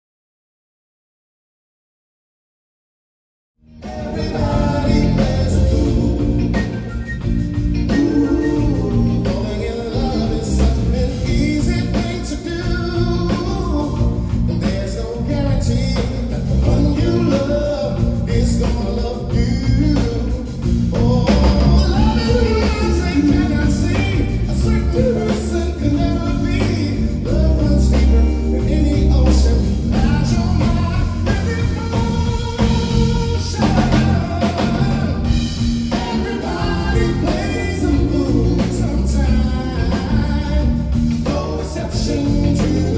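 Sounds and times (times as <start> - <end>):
backing band playing: 3.6 - 42.9
vocal group singing: 3.7 - 42.9.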